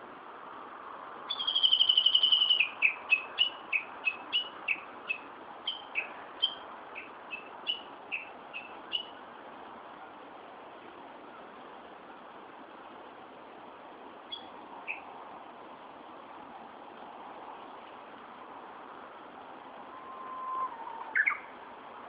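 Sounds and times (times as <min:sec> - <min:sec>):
steady background hiss: 0:00.0 - 0:22.0
songbird trilling and whistling: 0:01.3 - 0:09.1, 0:14.3 - 0:15.0, 0:20.1 - 0:21.5.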